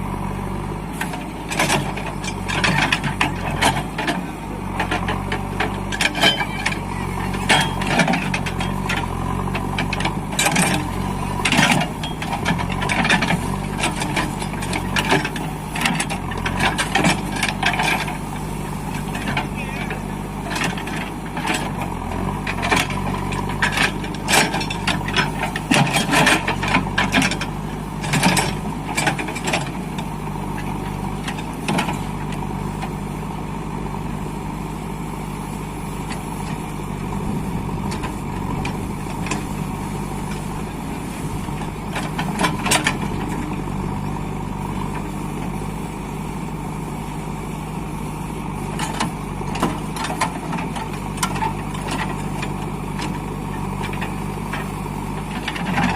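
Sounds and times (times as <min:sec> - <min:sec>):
diesel engine running: 0:00.0 - 0:55.9
sharp metal clanks and knocks: 0:04.8 - 0:06.8, 0:07.4 - 0:09.1.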